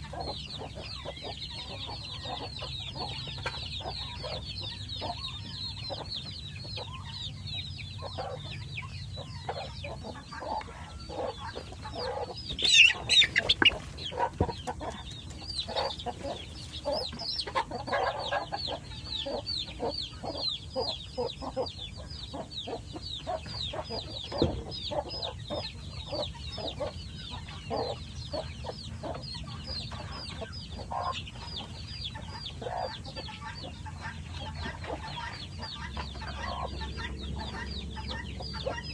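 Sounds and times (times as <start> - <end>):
chickens clucking: 0.0 - 38.9
loud chicken squawk: 10.4 - 14.4.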